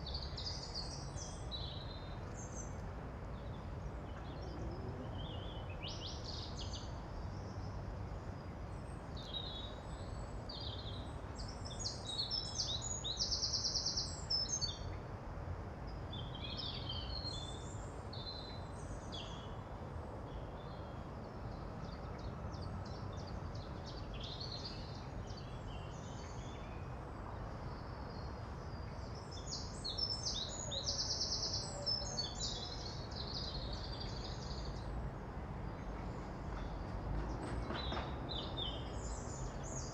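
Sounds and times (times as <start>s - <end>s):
songbirds singing and chirping: 0.0s - 15.1s, 15.9s - 39.9s.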